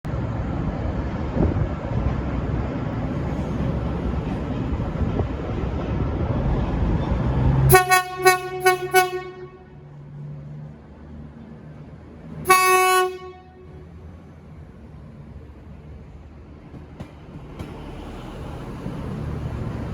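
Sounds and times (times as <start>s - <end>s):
train horn toots: 7.7s - 9.8s, 12.4s - 13.8s.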